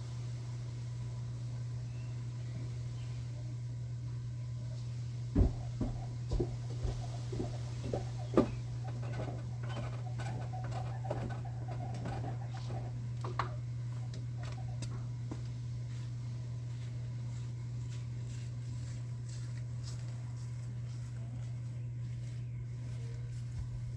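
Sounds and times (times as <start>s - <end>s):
steady low hum: 0.0s - 23.9s
light knocks and taps: 5.4s - 13.5s.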